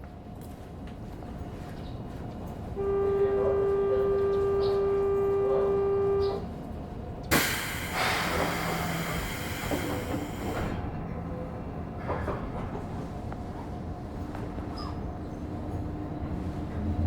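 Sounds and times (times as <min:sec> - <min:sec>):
pneumatic doors hissing air: 0:07.3 - 0:10.9.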